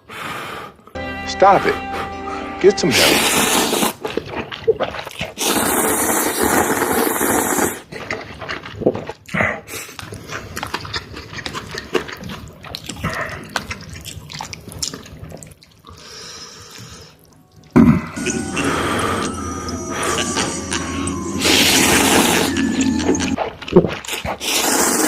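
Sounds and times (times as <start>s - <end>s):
wet eating clicks and smacks: 4.0s - 5.7s, 7.9s - 16.0s.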